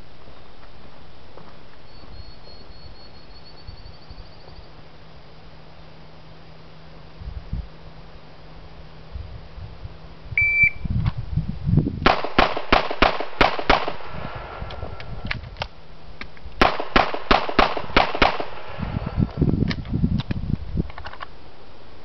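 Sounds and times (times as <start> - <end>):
shot timer beep: 10.4 - 10.9.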